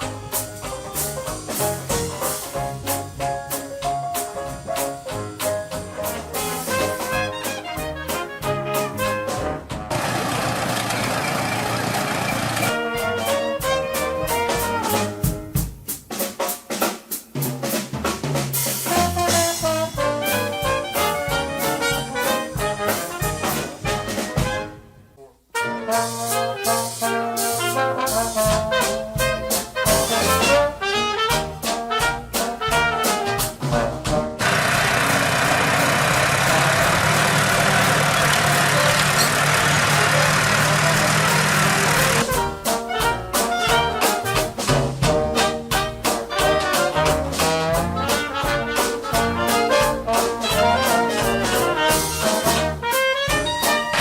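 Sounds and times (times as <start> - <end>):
drum kit beat: 0.0 - 24.9, 25.6 - 54.0
trumpets and trombones playing: 5.8 - 15.5, 18.8 - 54.0
tractor engine running: 9.9 - 12.7, 34.4 - 42.3.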